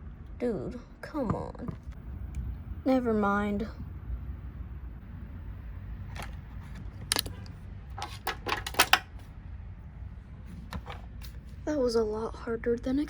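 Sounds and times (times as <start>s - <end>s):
plastic parts clicking and clattering: 6.1s - 9.2s.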